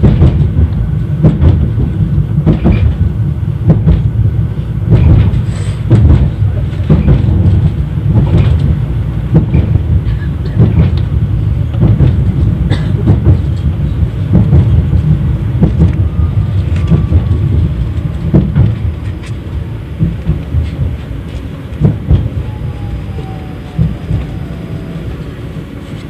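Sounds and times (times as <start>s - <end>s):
tram low rumble: 0.0s - 26.0s
wheels clacking over rails: 0.0s - 26.0s.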